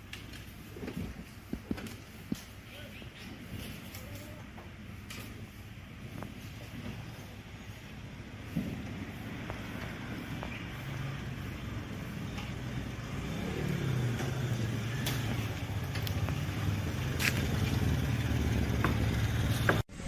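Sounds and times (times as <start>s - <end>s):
vehicle engine running: 4.4s - 20.0s.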